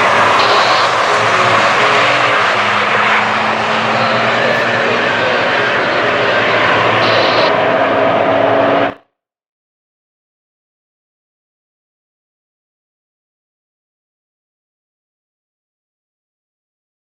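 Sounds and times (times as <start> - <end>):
race car engine at full throttle: 0.0 - 9.0.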